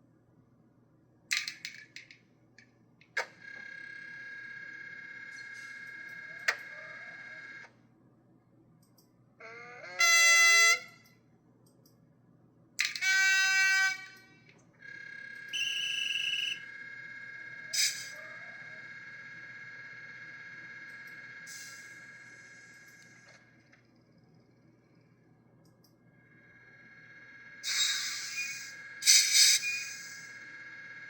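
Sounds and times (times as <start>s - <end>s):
sharp click: 1.3s - 2.2s
horn blasts: 9.8s - 11.1s, 13.0s - 14.3s
electric whine: 14.9s - 25.1s, 26.2s - 31.0s.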